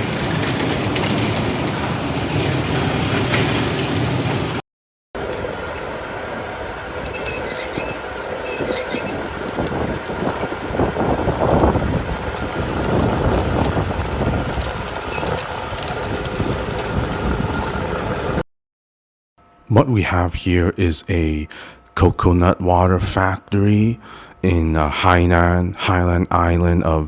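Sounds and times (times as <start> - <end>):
machinery humming: 0.0 - 4.6, 5.2 - 18.4.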